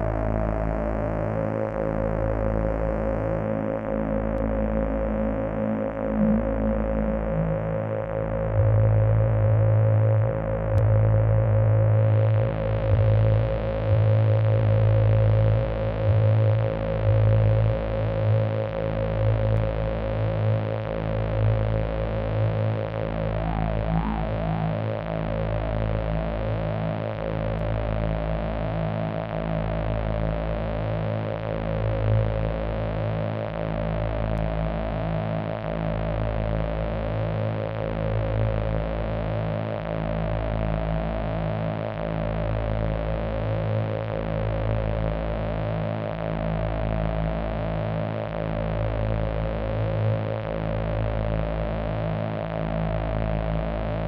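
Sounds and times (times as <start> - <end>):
synthesizer drone: 23.1 - 26.6.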